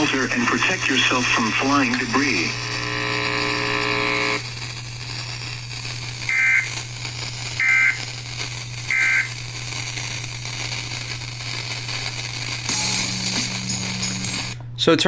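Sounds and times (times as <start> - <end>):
two-tone digital screeching bursts: 0.0 - 4.5, 5.2 - 9.6
low electrical hum: 0.0 - 15.0.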